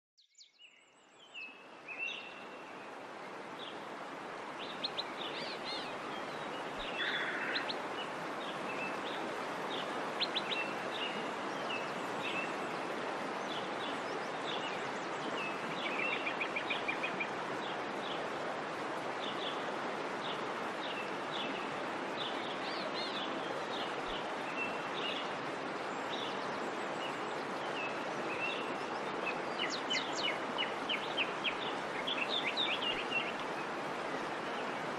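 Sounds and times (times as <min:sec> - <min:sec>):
background hiss: 0:00.6 - 0:34.9
small birds chirping: 0:20.2 - 0:33.8.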